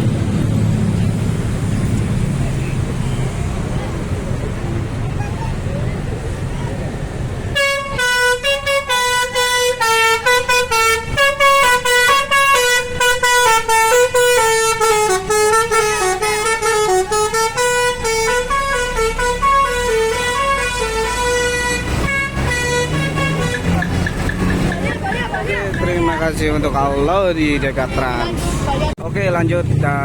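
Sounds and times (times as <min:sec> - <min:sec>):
bus engine rumble: 0:00.0 - 0:30.0
musical bus air horn tune: 0:07.5 - 0:24.1.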